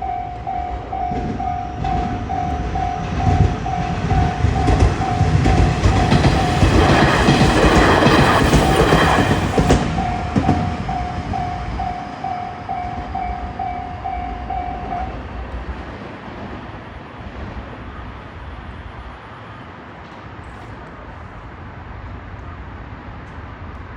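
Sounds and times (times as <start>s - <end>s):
level crossing warning bell: 0.0s - 15.3s
train rumble: 0.0s - 23.9s.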